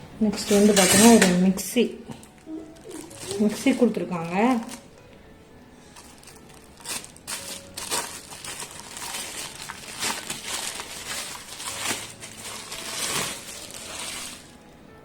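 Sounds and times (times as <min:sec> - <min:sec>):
packaging crinkling and rustling: 0:02.1 - 0:05.1, 0:05.8 - 0:14.6.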